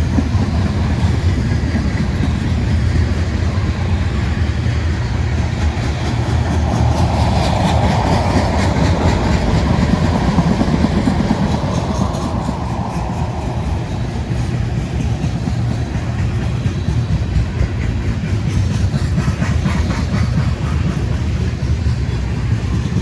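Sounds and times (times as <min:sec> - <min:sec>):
freight train rumbling past: 0:00.0 - 0:23.0
wheels clacking over rail joints: 0:00.0 - 0:23.0.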